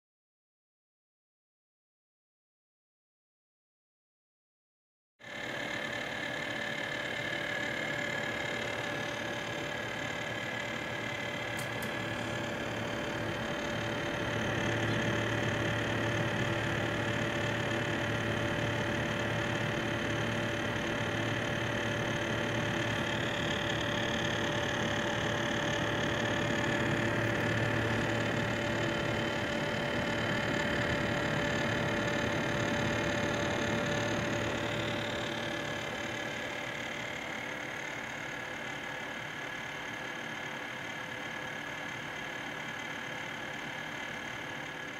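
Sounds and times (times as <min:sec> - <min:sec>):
cooler pump rattling and grinding: 0:05.4 - 0:38.0.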